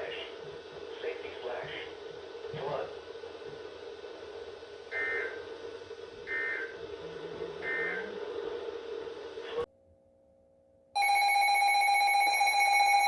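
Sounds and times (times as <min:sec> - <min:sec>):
broadcast hum: 0:00.0 - 0:09.7
emergency alert data tones: 0:06.2 - 0:06.8, 0:07.6 - 0:08.2.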